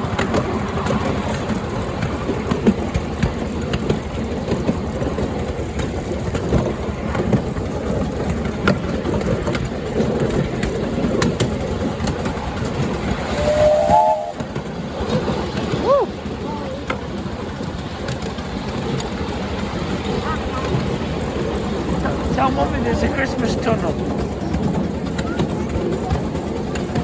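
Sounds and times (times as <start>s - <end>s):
miniature train rumbling on track: 0.0s - 27.0s
locomotive whistle: 12.6s - 16.2s.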